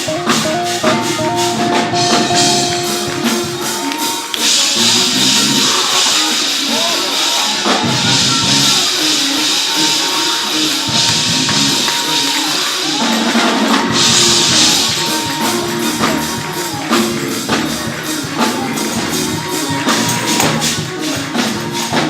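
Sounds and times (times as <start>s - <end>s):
church praise music: 0.0s - 22.0s
drum beat: 0.0s - 22.0s
tambourine shaking: 2.1s - 22.0s.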